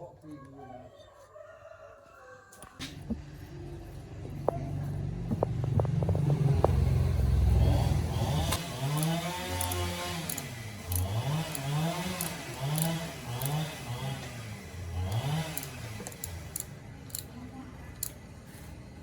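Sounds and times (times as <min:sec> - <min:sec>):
motorcycle engine revving: 0:02.9 - 0:17.3.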